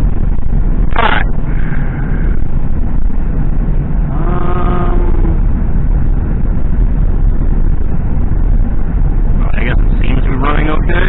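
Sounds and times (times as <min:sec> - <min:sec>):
car engine rumble: 0:00.0 - 0:11.0
steady tone: 0:00.0 - 0:11.0.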